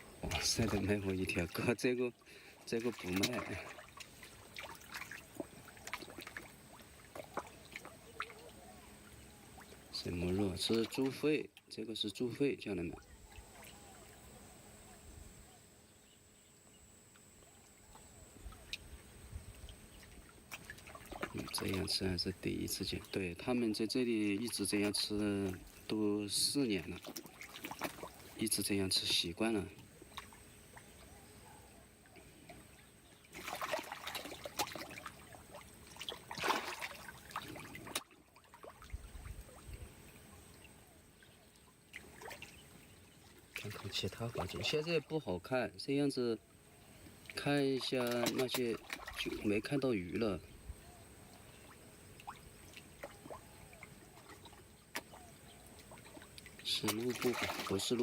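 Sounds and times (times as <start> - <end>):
fish splashing at water surface: 2.5 - 9.9, 19.7 - 22.0, 27.0 - 28.5, 33.3 - 39.6, 41.9 - 44.5, 47.2 - 49.5, 51.6 - 58.0.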